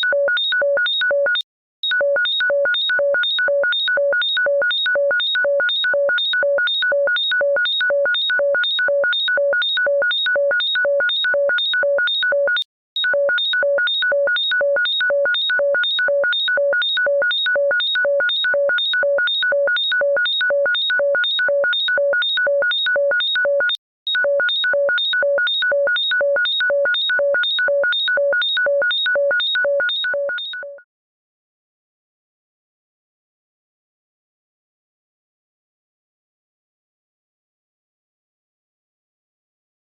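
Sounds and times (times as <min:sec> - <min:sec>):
harsh electronic ringtone beeping: 0:00.0 - 0:30.7.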